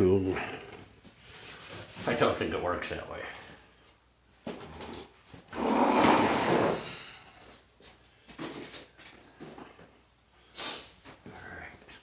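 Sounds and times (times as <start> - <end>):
plastic case scraping: 5.6 - 6.9.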